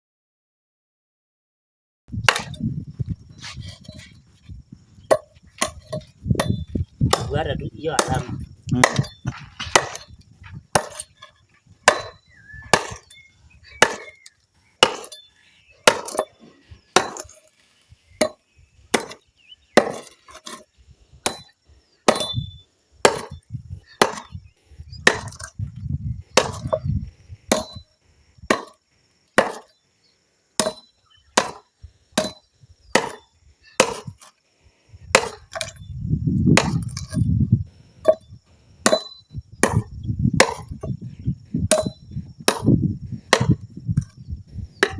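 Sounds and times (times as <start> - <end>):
chopping blows into wood: 2.1 - 4.1, 5.1 - 13.2, 13.8 - 15.2, 15.8 - 17.4, 18.2 - 19.2, 19.8 - 20.6, 22.1 - 24.4, 25.0 - 25.6, 26.4 - 27.8, 28.5 - 28.8, 29.4 - 29.7, 30.6 - 34.3, 35.1 - 35.8, 36.5 - 37.3, 38.0 - 44.2.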